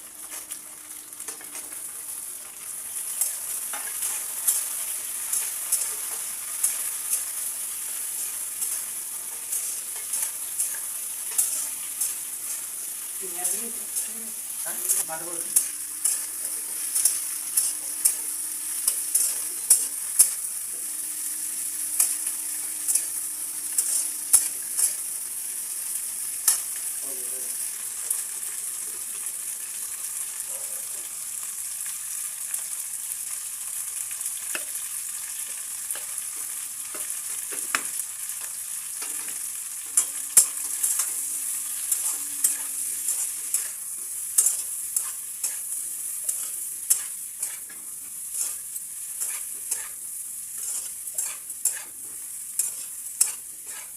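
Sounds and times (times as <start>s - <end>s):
vegetables sizzling in oil: 0.0s - 53.9s
spatula knocking and scraping pan: 49.2s - 50.0s, 50.6s - 53.9s.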